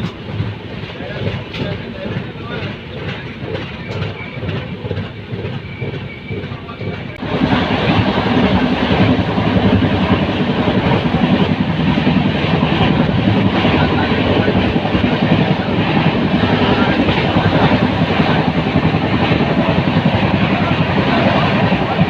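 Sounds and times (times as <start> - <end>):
faint rail clicks: 0.0 - 7.2
train rumbling on tracks: 0.0 - 22.0.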